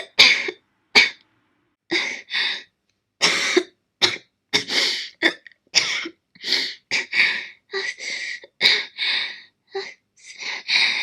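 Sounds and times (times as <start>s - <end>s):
woman coughing: 0.0s - 1.2s, 3.2s - 6.2s.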